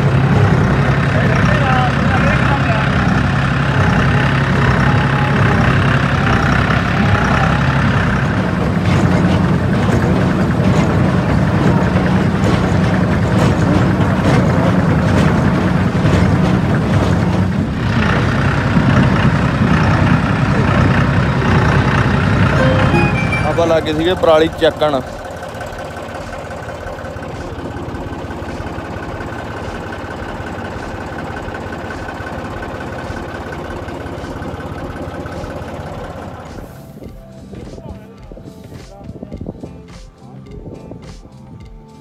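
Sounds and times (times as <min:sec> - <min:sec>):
tractor engine running: 0:00.0 - 0:39.6
rapid clatter of knocks: 0:08.5 - 0:19.2.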